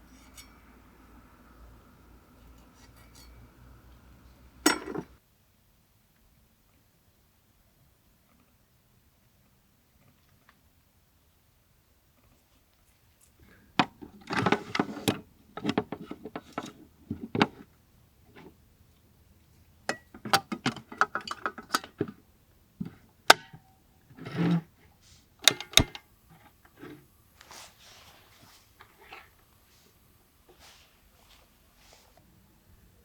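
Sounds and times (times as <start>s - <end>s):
rustling: 24.8s - 33.0s.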